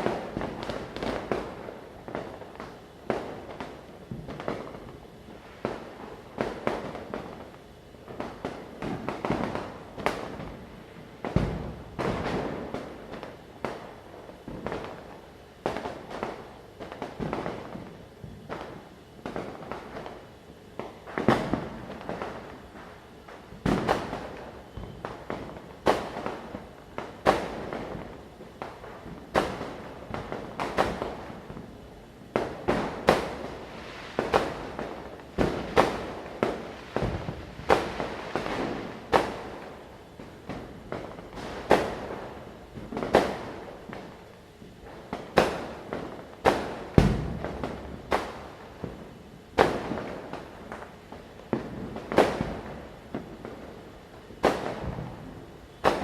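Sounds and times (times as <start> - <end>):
distant firecrackers popping: 0.0 - 56.0
firecrackers banging: 0.0 - 56.0.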